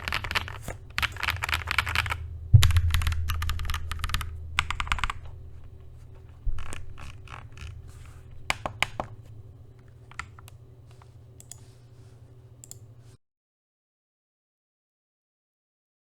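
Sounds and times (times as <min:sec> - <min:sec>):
mechanical keyboard key presses: 0:00.0 - 0:09.3, 0:09.9 - 0:10.6.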